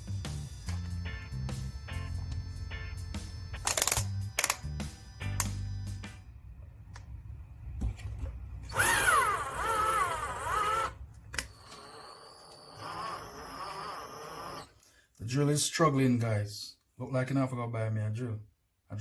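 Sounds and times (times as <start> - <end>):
power drill boring into wood: 8.7 - 14.8.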